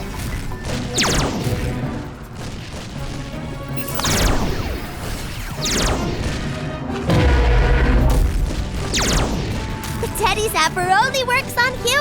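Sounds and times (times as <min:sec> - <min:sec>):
background music: 0:00.0 - 0:12.0
low boom: 0:07.1 - 0:09.4.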